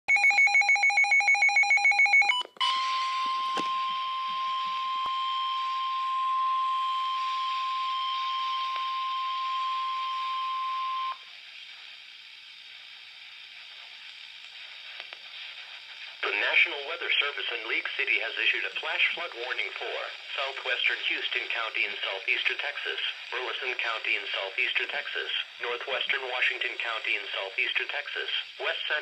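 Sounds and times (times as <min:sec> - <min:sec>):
steady warning alarm tone: 0:00.1 - 0:11.2
faint radio hiss: 0:04.3 - 0:29.0
pulsing electronic data burst: 0:16.2 - 0:29.0.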